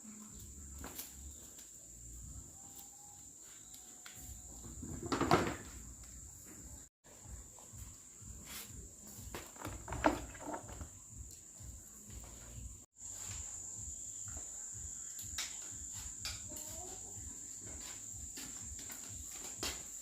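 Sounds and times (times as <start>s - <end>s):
insect chirring: 13.0s - 20.0s.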